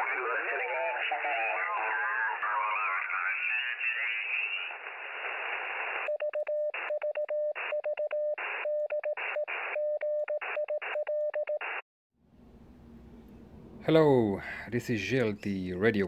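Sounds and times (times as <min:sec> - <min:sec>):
radio static hiss: 0:00.0 - 0:06.1
morse code tone: 0:06.1 - 0:11.8.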